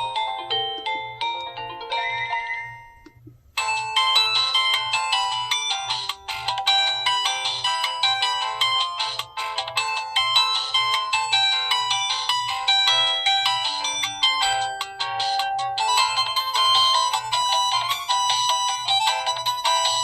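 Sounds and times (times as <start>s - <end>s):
polyphonic phone ringtone: 0.0s - 20.0s.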